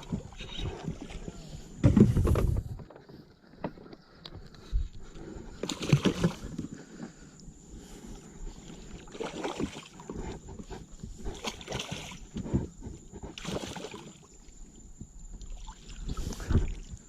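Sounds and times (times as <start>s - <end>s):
knocks and clatter on a kayak: 0.0s - 7.2s, 9.2s - 13.8s, 16.2s - 17.0s
water sloshing: 5.5s - 7.2s, 8.6s - 14.6s.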